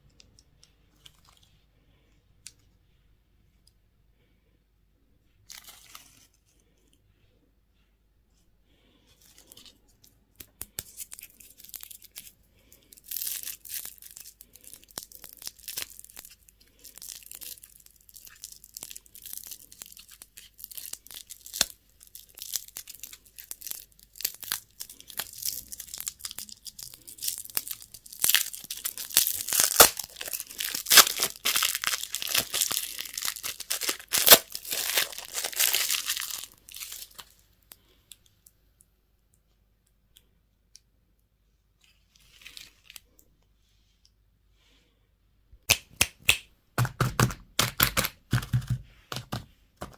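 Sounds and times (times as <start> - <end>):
candy wrapper crinkling: 5.5 - 6.5, 9.2 - 38.2, 46.8 - 49.9.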